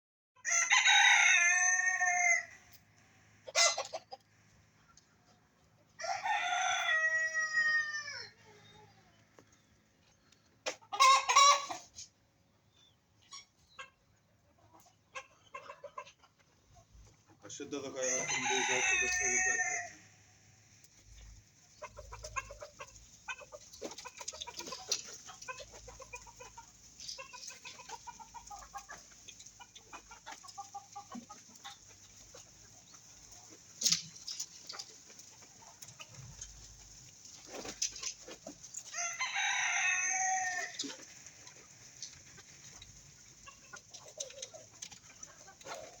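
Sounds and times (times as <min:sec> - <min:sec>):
rooster crowing: 0:00.4 - 0:02.7, 0:06.0 - 0:08.4, 0:18.0 - 0:20.2, 0:38.9 - 0:40.8
chickens clucking: 0:00.5 - 0:46.0.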